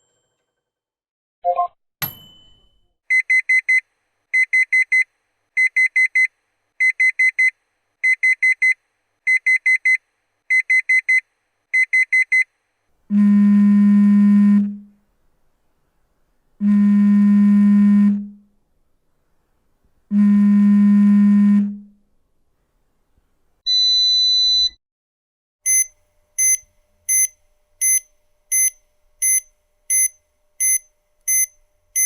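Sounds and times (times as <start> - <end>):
ding: 2.0 - 3.0
low buzzer tones: 13.1 - 14.9, 16.6 - 18.4, 20.1 - 21.8, 25.7 - 32.0
alarm clock beeps: 23.7 - 24.8, 25.7 - 32.0.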